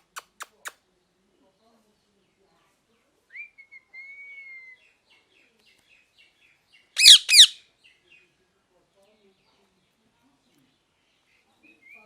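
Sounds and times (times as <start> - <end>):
parrot squawking: 7.0 - 7.6
parrot whistling: 7.0 - 7.6.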